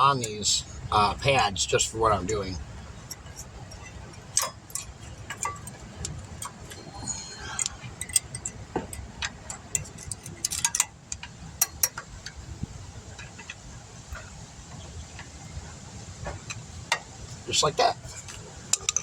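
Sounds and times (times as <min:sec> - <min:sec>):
screwdriver clicking on metal: 0:03.1 - 0:12.0.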